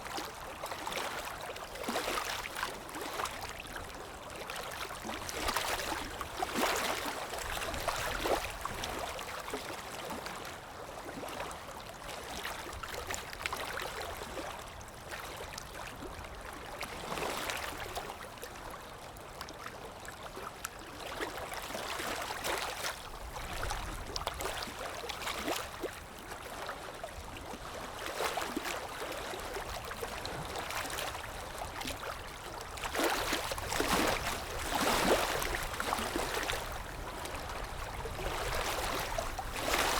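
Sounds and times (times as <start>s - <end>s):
water flowing and splashing: 29.5s - 39.9s.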